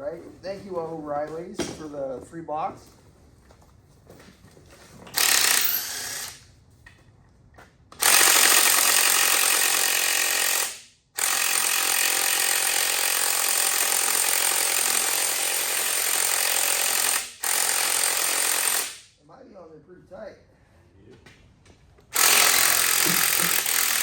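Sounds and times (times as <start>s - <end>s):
impact wrench hammering: 5.2s - 6.4s, 8.0s - 19.1s, 22.1s - 24.0s.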